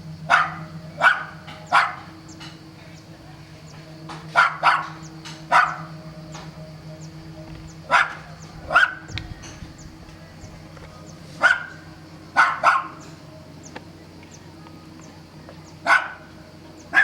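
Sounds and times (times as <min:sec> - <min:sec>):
dog barking: 0:00.3 - 0:02.1, 0:04.3 - 0:05.9, 0:07.9 - 0:09.1, 0:11.4 - 0:11.8, 0:12.4 - 0:13.0, 0:15.8 - 0:16.3.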